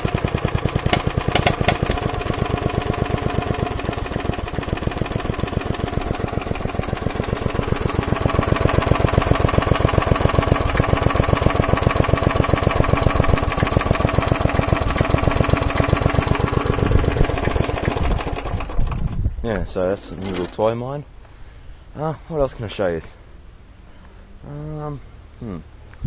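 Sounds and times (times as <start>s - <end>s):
lawnmower engine idling: 0.0s - 19.3s, 19.9s - 20.8s.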